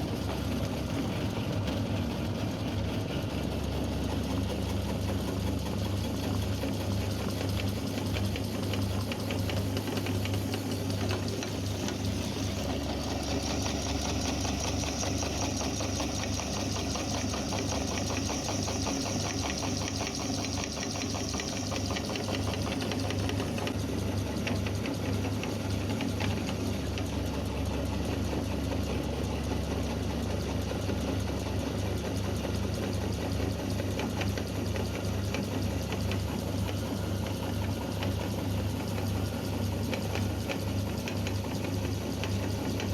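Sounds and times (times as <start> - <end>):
electric meat grinder running: 0.0 - 32.4.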